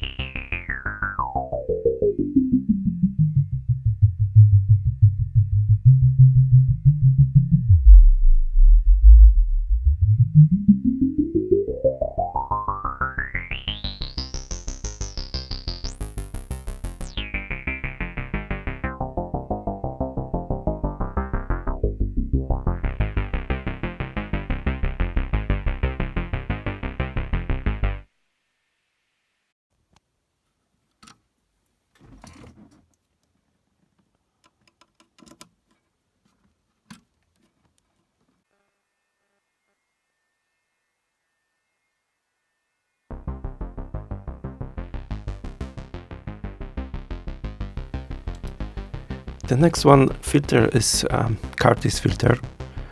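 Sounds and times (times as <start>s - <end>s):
synthesizer sequenced pattern: 0.0s - 27.7s, 43.1s - 52.9s.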